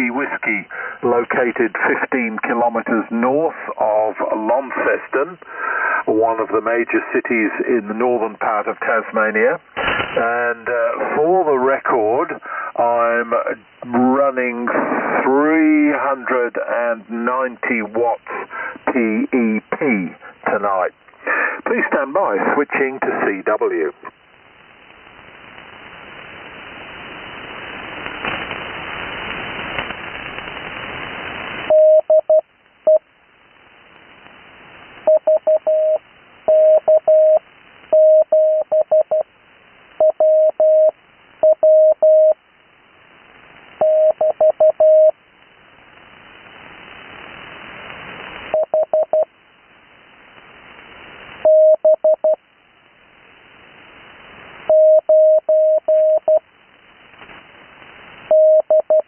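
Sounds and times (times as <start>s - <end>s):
radio band hiss: 0.0s - 59.0s
morse code tone: 31.7s - 33.0s, 35.1s - 37.4s, 38.0s - 39.2s, 40.0s - 42.4s, 43.8s - 45.1s, 51.5s - 52.4s, 54.7s - 56.4s.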